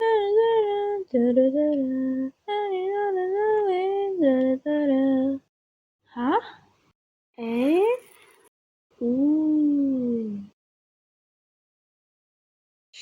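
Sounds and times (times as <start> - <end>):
woman singing unaccompanied: 0.0 - 5.5.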